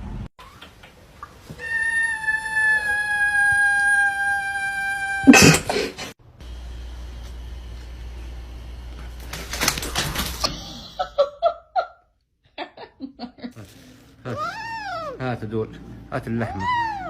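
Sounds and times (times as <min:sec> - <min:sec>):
angry cat yowling: 0:01.5 - 0:05.7, 0:14.3 - 0:15.2, 0:16.5 - 0:17.0
steady low hum: 0:05.4 - 0:10.9.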